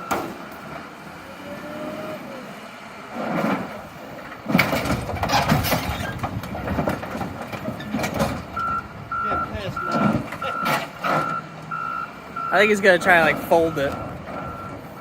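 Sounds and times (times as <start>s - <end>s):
heavy machine engine running: 0.0s - 15.0s
metal crunching and clattering: 3.2s - 8.8s, 9.4s - 11.4s.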